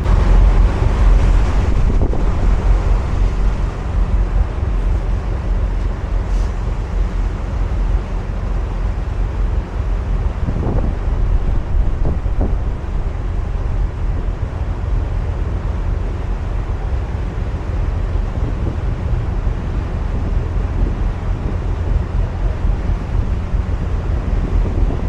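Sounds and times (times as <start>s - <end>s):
rushing sea noise: 0.0s - 25.0s
wind buffeting microphone: 0.0s - 25.0s.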